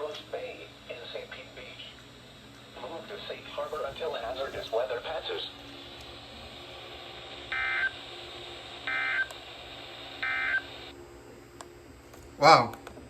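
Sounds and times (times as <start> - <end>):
radio hiss: 0.0 - 11.0
digital data tone bursts: 7.2 - 10.9.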